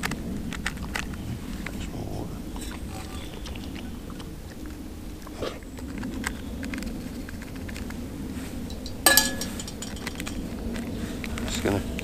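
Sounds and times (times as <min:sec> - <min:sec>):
light rustles and taps: 0:05.8 - 0:12.0
sharp ringing clink: 0:08.7 - 0:10.4.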